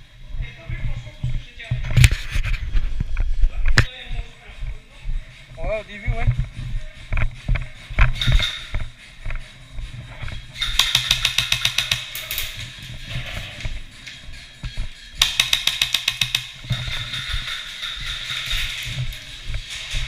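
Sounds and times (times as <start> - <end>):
airsoft gun firing full-auto bursts: 10.7 - 12.1, 15.2 - 16.6.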